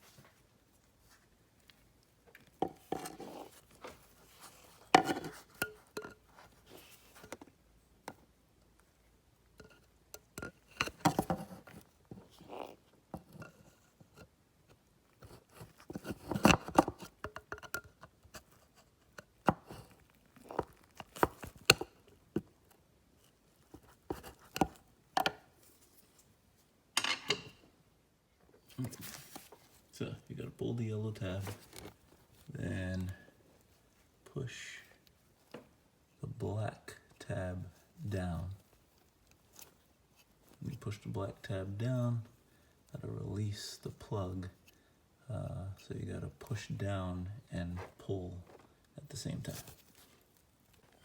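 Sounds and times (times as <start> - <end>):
rustling: 0.0 - 17.3, 18.1 - 26.8, 28.5 - 43.4, 47.6 - 51.0.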